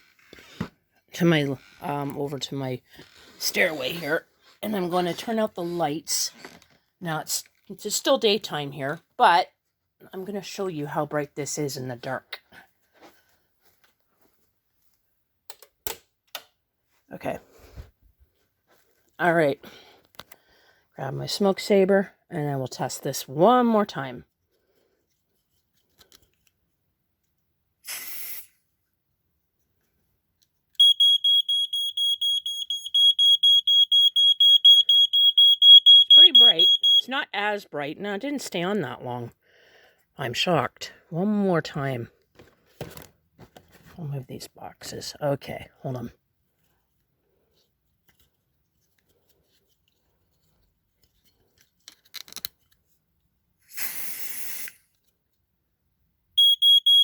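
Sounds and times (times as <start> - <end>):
aerosol spray hiss: 27.9 - 28.6, 53.7 - 54.8
smoke alarm high pulsing tone: 30.8 - 37.3, 56.4 - 57.0.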